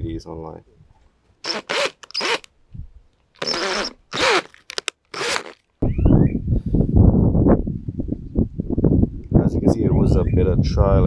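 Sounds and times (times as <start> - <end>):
short rasping strokes: 3.4 - 5.6
wind buffeting microphone: 5.8 - 11.0.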